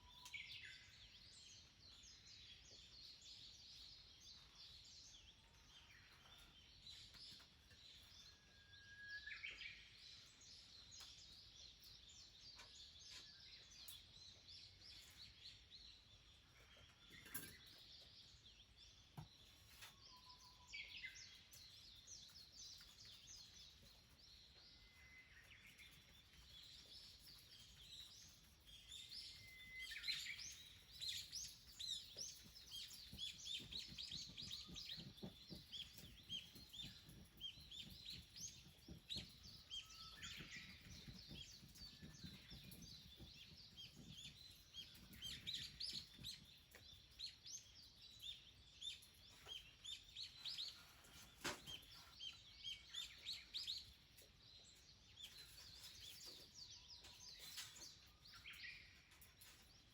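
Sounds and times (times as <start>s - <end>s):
birds chirping and whistling: 19.8s - 59.9s.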